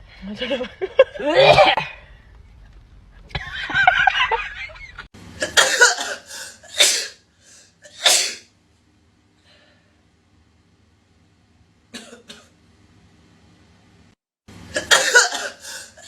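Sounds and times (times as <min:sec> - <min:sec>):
person sneezing and coughing: 0:05.4 - 0:07.2, 0:07.8 - 0:08.5, 0:14.7 - 0:16.0.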